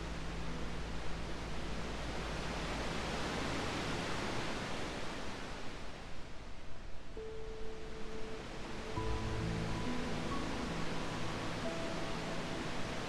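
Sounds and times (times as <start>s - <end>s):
ocean waves: 0.1s - 6.5s, 7.3s - 13.0s
low musical drone: 7.2s - 13.0s.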